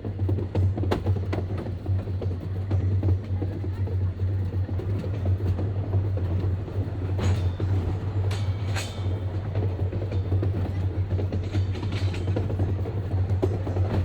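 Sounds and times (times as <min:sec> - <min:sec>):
train running gear rattles: 0:00.0 - 0:14.0
electric train drive hum: 0:01.5 - 0:14.0
train wheel squeals: 0:06.2 - 0:14.0.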